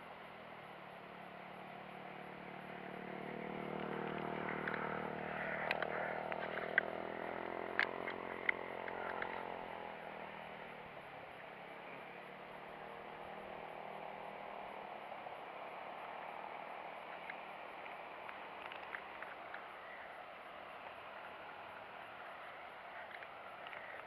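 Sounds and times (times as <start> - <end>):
vehicle engine passing by: 0.2 - 24.0
sharp clicks and ticks: 3.6 - 9.6, 16.5 - 20.0.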